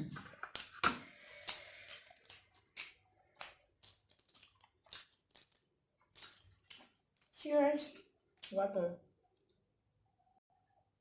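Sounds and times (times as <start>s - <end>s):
person chewing food: 0.2s - 7.4s.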